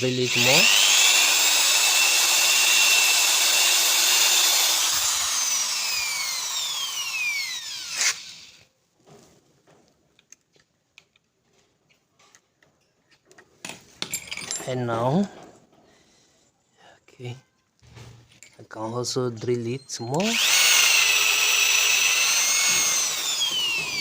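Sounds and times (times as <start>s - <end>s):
power drill running: 0.2s - 8.7s, 20.2s - 24.0s.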